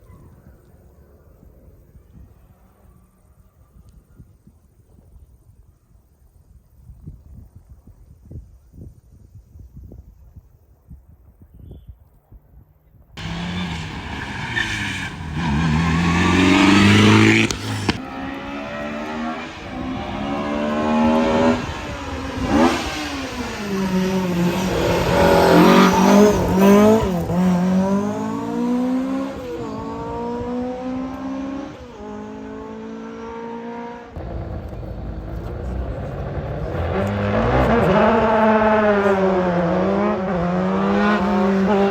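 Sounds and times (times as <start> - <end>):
race car engine revving: 13.2 - 41.9.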